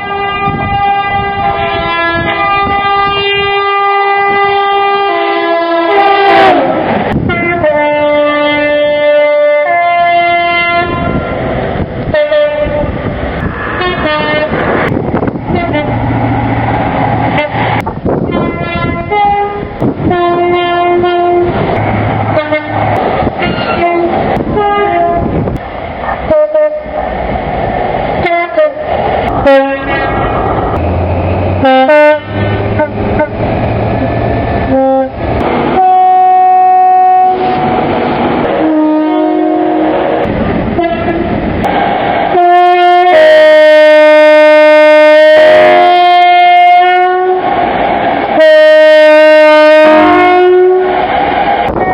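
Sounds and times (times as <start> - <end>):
two-tone train horn blasts: 0.0 - 11.4, 12.1 - 13.0, 13.8 - 14.7, 15.5 - 16.1, 17.3 - 25.6, 26.3 - 27.0, 28.2 - 30.2, 31.6 - 33.4, 34.7 - 37.6, 38.4 - 41.4, 42.3 - 47.5, 48.4 - 51.0, 51.7 - 51.9
rumble of passing trains: 0.0 - 51.9.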